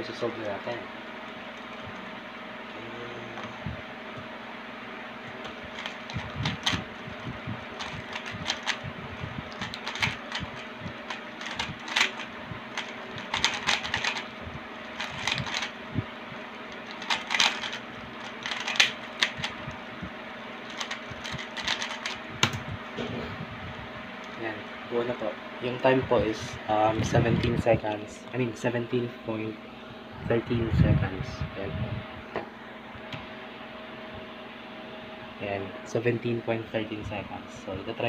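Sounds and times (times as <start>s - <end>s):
steady background hum: 0.0s - 38.0s
plastic puzzle cube clicking: 9.5s - 10.4s, 11.1s - 14.2s, 16.9s - 17.8s, 20.7s - 22.2s.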